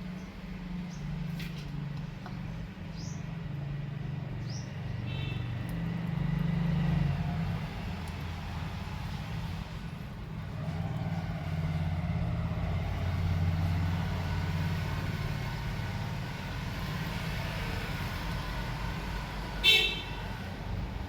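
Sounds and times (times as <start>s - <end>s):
vehicle horn toot: 5.1s - 5.5s, 19.6s - 20.3s.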